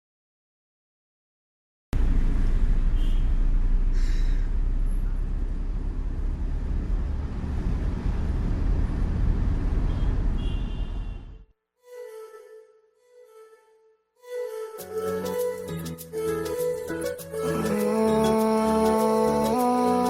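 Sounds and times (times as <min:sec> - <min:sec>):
road traffic rumble: 0:02.0 - 0:11.4.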